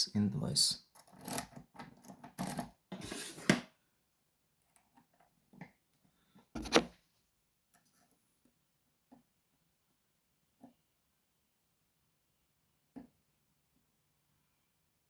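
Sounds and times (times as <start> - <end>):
lock picks scraping and rattling: 1.0 - 3.2.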